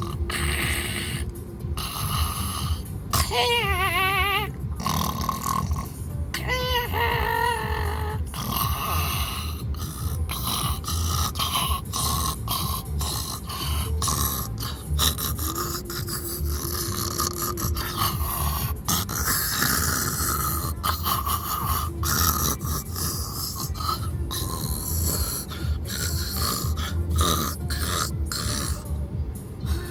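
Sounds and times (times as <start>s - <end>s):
person snoring: 0.0s - 29.0s.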